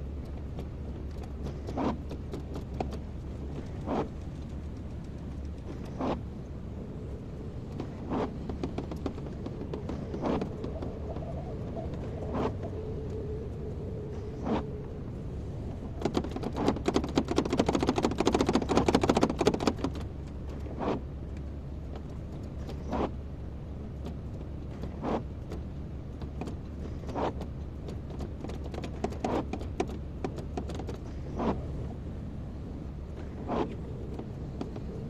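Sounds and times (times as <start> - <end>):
excavator engine humming: 0.0 - 19.2
crackling and rattling: 7.6 - 14.8, 15.9 - 21.0.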